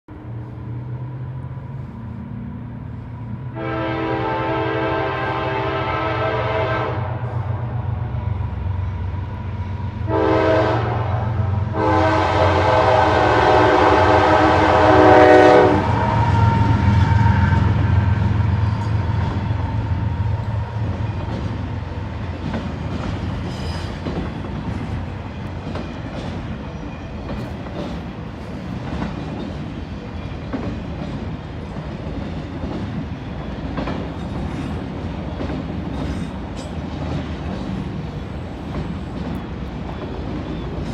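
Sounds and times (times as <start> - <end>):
locomotive engines rumbling: 0.1 - 40.9
locomotive air horn blasts: 3.5 - 7.6, 10.0 - 18.6
train wheels clickety-clack: 11.8 - 40.9.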